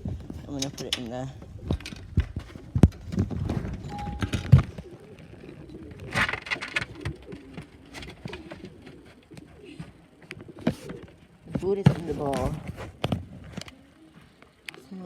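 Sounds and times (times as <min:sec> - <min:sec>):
bird cooing: 0:03.8 - 0:11.5, 0:13.4 - 0:15.0.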